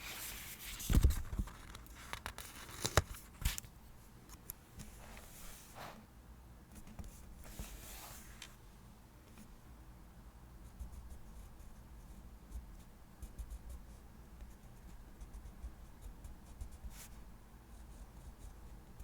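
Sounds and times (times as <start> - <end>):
paper rustling and crinkling: 0.0 - 3.7.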